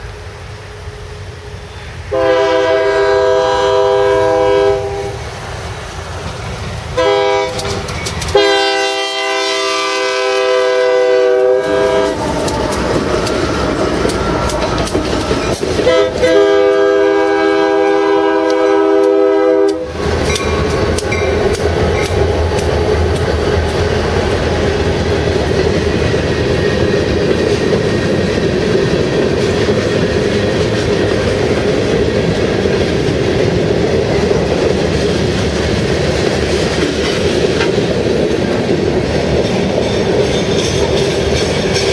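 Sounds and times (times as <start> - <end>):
train rumbling past: 0.0 - 41.9
locomotive air horn blasts: 1.7 - 5.2, 7.0 - 20.0
wheels clacking over rail joints: 5.8 - 10.0, 10.6 - 41.9.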